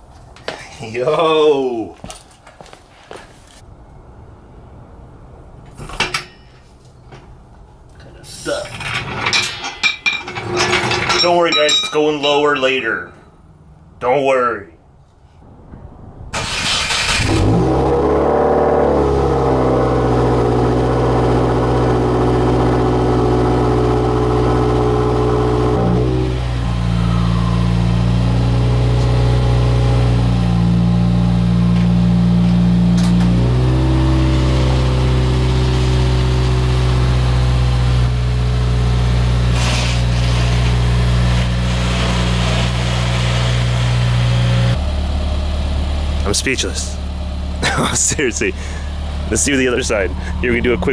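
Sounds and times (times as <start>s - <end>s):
car engine idling: 19.0s - 50.9s.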